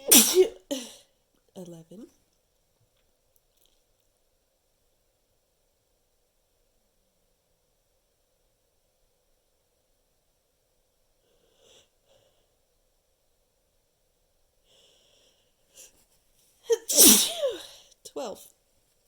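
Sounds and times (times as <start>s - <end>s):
person sneezing: 0.0s - 1.0s, 16.7s - 17.8s.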